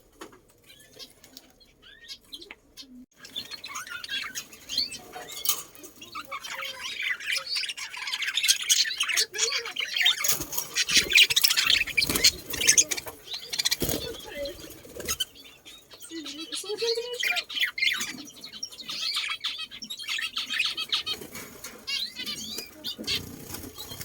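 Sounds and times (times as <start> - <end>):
small birds chirping: 0.0 - 24.0.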